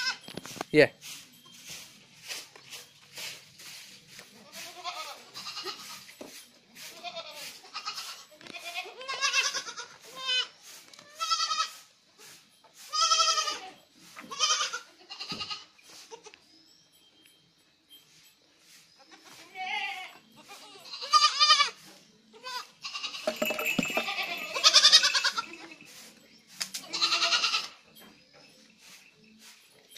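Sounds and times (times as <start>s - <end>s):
goats bleating: 4.5s - 5.9s, 6.9s - 10.5s, 12.9s - 15.6s, 19.4s - 21.8s, 22.4s - 25.7s, 26.9s - 27.8s.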